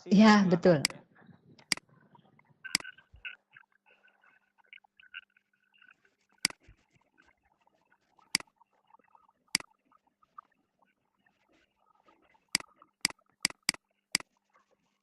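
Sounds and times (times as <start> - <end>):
faint background noise: 0.0 - 15.0
sharp clicks: 1.6 - 1.8, 12.6 - 13.8.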